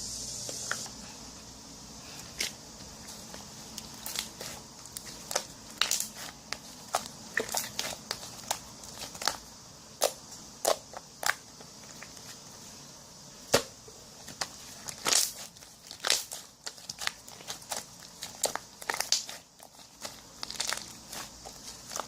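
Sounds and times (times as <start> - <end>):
faint steady hiss: 0.0 - 22.0
slime clay popping and clicking: 14.4 - 21.3.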